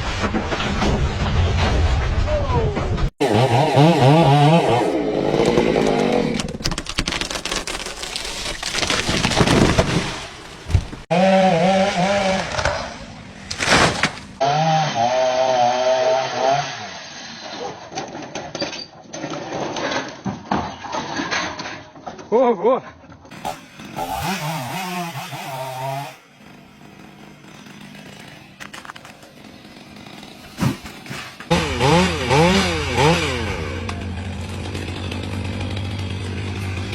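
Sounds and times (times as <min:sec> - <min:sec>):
chainsaw engine running: 0:03.2 - 0:06.4, 0:23.3 - 0:36.9
wood crackling and snapping: 0:05.2 - 0:11.1, 0:12.0 - 0:14.4, 0:27.9 - 0:29.5.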